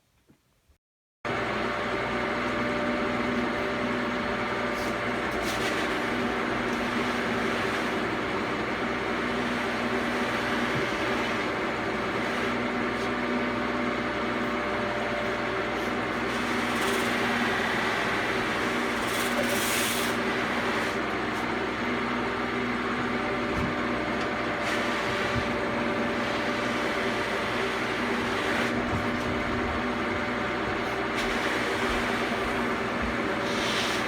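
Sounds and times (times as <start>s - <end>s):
buffing machine motor hum: 2.4s - 34.0s
wheel rubbing hiss: 31.2s - 34.0s.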